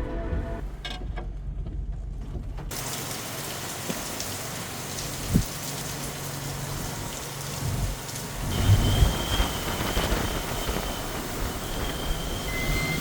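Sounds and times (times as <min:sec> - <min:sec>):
low rumble: 0:00.0 - 0:02.7
heavy rain hissing: 0:02.7 - 0:13.0.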